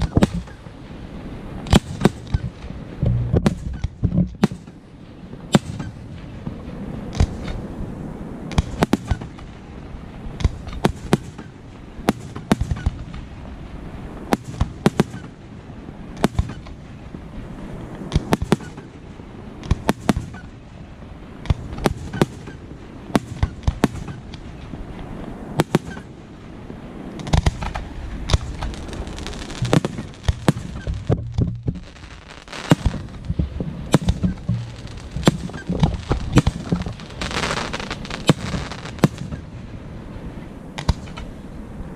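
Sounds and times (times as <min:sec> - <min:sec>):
fireworks bursting with bangs: 0:00.0 - 0:07.7, 0:08.4 - 0:41.4
low rumble: 0:01.4 - 0:05.4, 0:27.0 - 0:40.6.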